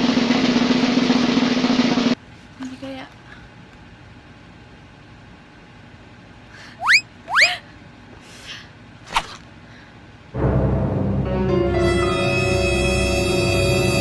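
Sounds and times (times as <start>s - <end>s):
upward-sliding whistle effects: 6.8s - 7.6s
ominous music: 10.4s - 14.0s.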